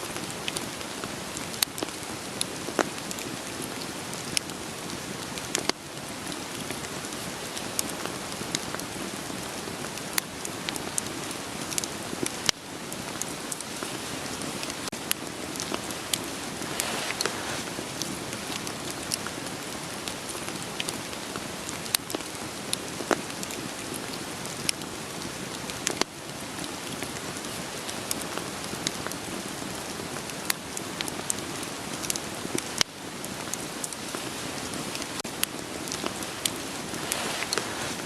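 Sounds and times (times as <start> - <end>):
steady rain patter: 0.0 - 38.0
wood fire crackling and popping: 0.1 - 38.0.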